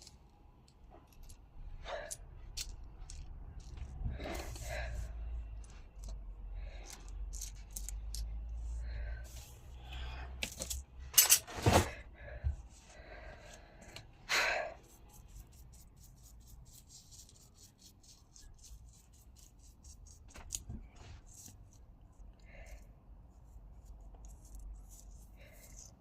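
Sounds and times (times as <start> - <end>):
heavy breath: 4.0 - 5.7, 8.6 - 10.5, 11.7 - 14.8.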